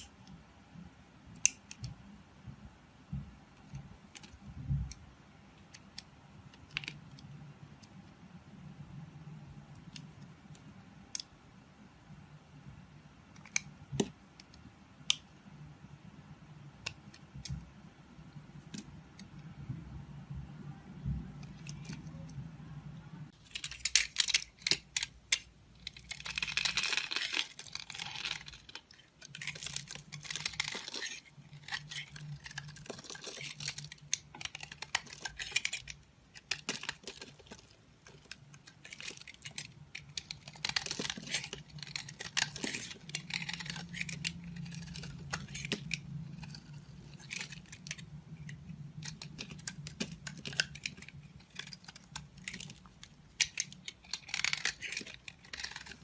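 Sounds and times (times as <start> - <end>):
faint low hum: 0.0 - 56.0
knife carving soap: 1.3 - 2.0, 13.3 - 15.3, 16.7 - 17.7, 23.3 - 56.0.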